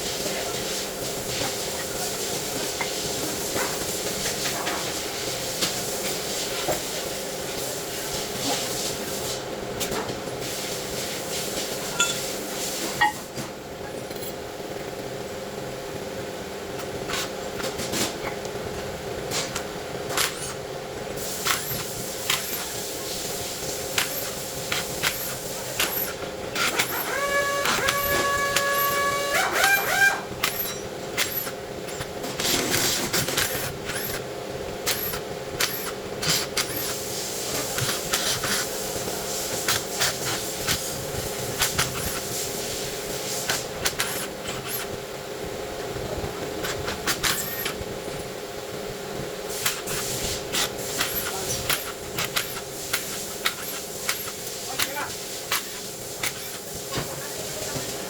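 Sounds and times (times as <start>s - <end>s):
steady mechanical hum: 0.0s - 58.0s
tools and parts clinking: 12.0s - 12.2s, 13.8s - 14.4s.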